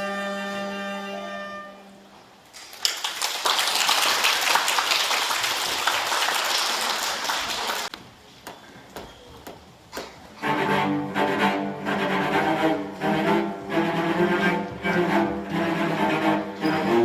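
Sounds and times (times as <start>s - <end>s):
audience clapping: 2.5s - 8.0s.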